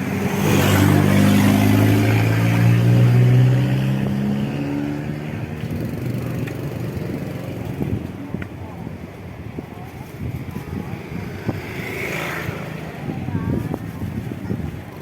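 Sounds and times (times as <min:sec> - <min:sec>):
engine drone passing: 0:00.0 - 0:07.7.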